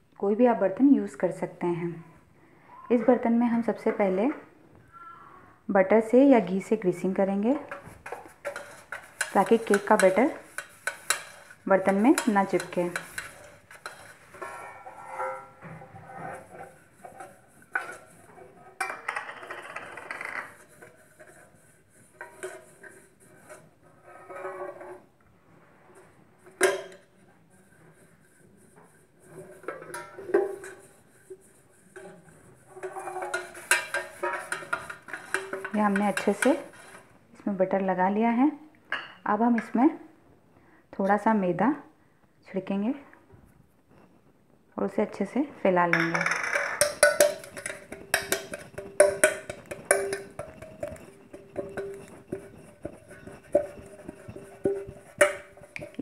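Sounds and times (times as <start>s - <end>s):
clinks and scraping on metal pot: 6.1s - 25.1s, 25.8s - 37.2s, 45.9s - 56.0s
knocking on metal pot: 45.9s - 56.0s.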